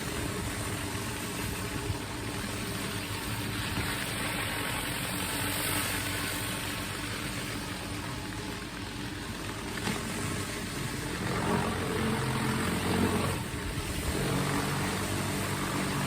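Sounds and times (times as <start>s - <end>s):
pressure washer engine hum: 0.0s - 16.0s
water spray hissing: 9.6s - 16.0s.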